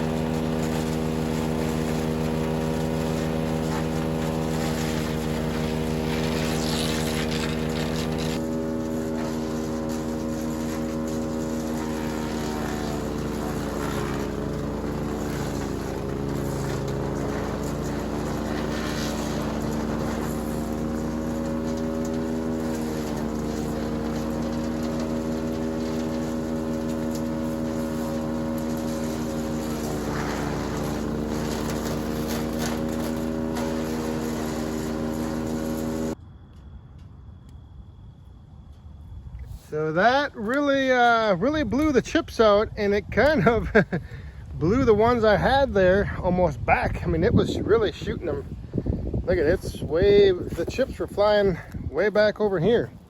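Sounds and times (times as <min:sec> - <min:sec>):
branches being chipped: 0:00.0 - 0:36.2
wood chipper engine running: 0:00.0 - 0:36.2, 0:39.5 - 0:53.0.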